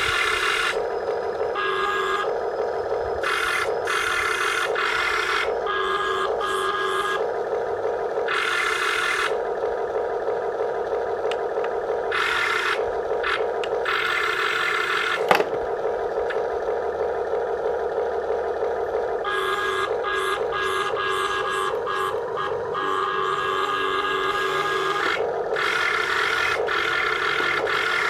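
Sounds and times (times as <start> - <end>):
electric motors whirring: 0.0 - 28.0
high motor whine: 0.0 - 28.0.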